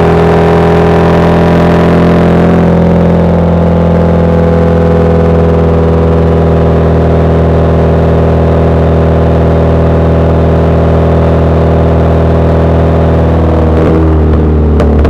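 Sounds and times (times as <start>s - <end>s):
loud car exhaust droning: 0.0s - 15.0s.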